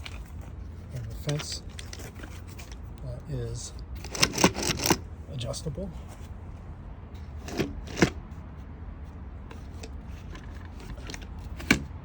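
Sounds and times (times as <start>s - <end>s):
light clicks and scrapes: 0.0s - 3.1s, 7.2s - 11.9s.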